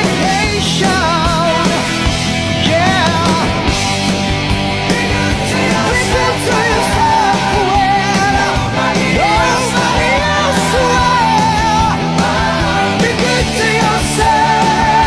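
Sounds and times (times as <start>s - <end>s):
loud rock music: 0.0s - 15.0s.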